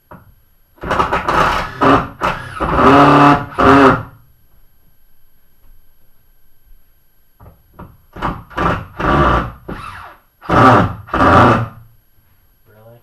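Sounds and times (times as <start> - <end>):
power drill bursts: 0.8 - 4.2, 8.2 - 11.8.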